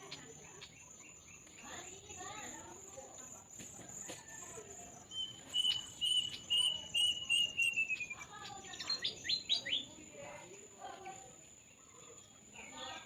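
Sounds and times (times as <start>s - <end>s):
insect trill: 0.0s - 13.0s
small bird calling: 5.1s - 10.0s.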